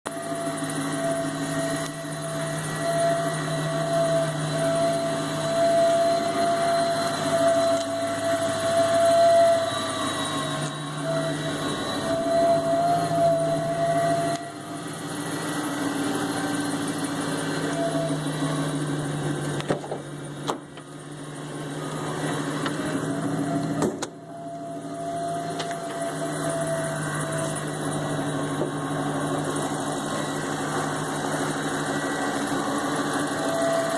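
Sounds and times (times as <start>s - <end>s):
car engine with whine: 0.1s - 33.9s.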